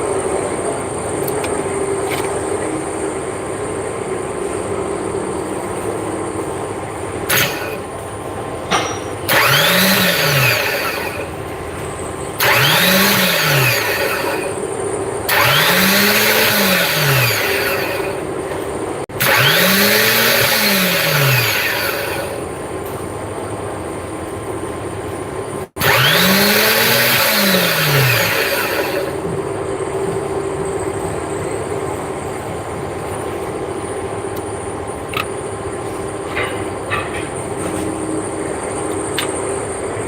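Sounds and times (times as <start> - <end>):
starter motor whirring: 7.3 - 7.9, 9.3 - 11.4, 12.4 - 14.6, 15.3 - 18.2, 19.1 - 22.4, 25.8 - 29.2.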